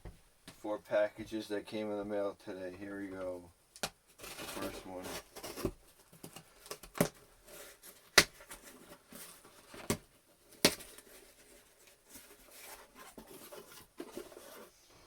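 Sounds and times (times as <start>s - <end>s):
packaging rustling: 4.2s - 14.7s.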